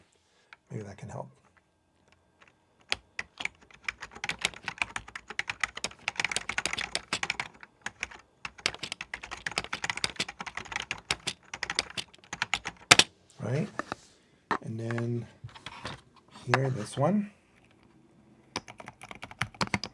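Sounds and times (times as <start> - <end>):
mechanical keyboard typing: 2.4 - 13.1, 18.5 - 19.9.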